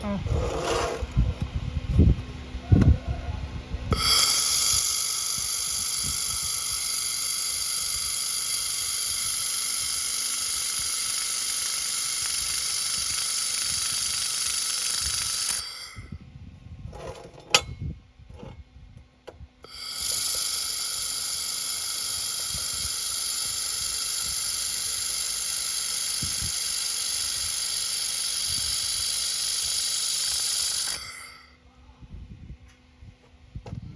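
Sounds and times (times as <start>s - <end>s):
laser welder hissing: 4.0s - 16.1s, 19.7s - 31.5s.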